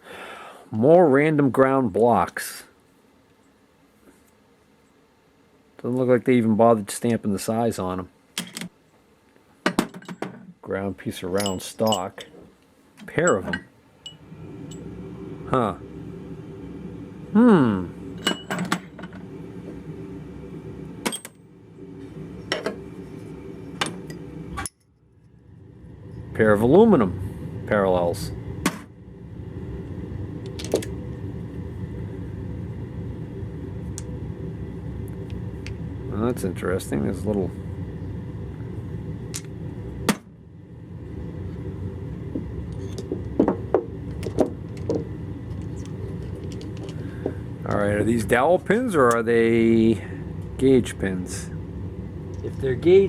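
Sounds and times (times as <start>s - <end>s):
steady low hum: 0.0s - 53.0s
steel blocks clinking: 11.4s - 12.3s.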